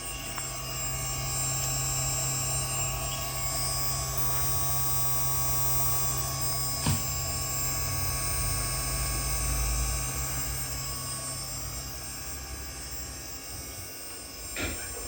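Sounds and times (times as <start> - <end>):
brief knock: 6.8 - 7.1.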